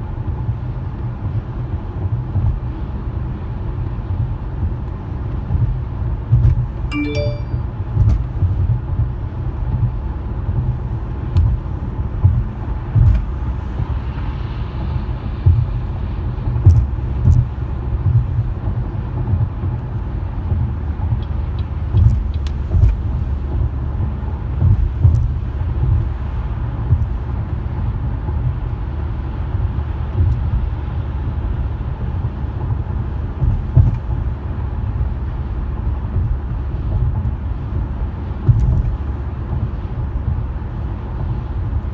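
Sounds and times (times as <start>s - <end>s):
road and engine rumble: 0.0s - 41.9s.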